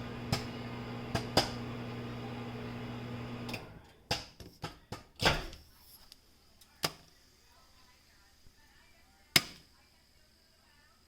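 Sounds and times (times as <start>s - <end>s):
microwave oven humming: 0.0s - 3.8s
popcorn kernels popping: 0.2s - 1.7s, 9.3s - 9.7s.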